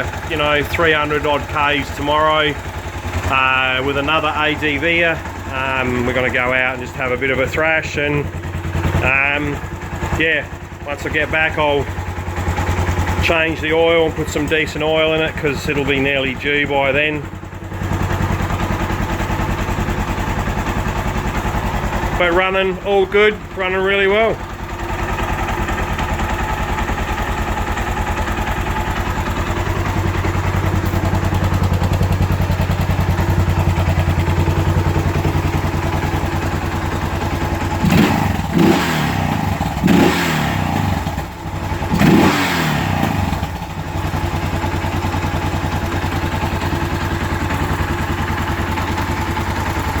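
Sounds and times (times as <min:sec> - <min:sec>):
motorcycle engine idling and revving: 0:00.0 - 0:50.0.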